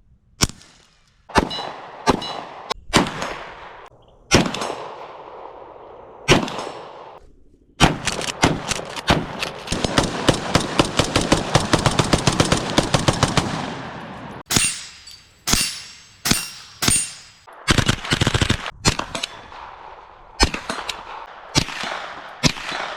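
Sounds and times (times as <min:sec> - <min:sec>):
gunshots with ringing echo: 0:14.5 - 0:17.5.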